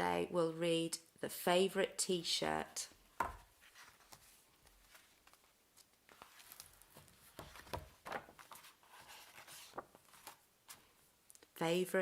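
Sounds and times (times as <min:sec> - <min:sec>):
paper pages rustling: 0:03.2 - 0:11.1.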